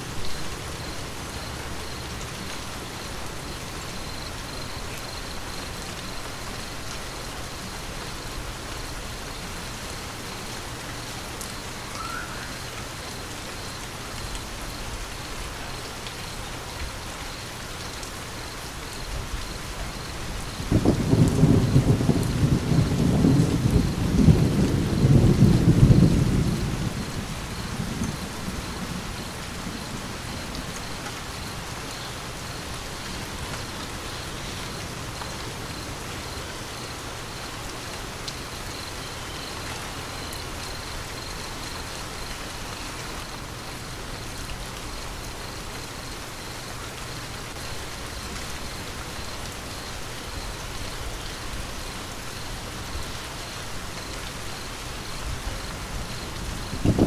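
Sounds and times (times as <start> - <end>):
steady rain falling: 0.0 - 57.0
thunder rumbling: 20.2 - 31.7, 55.0 - 57.0.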